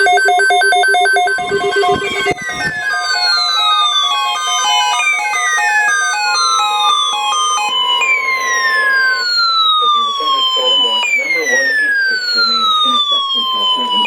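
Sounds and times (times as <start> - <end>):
stepped electronic beeps: 0.0 - 2.9
electronic siren alarm tone: 0.0 - 14.0.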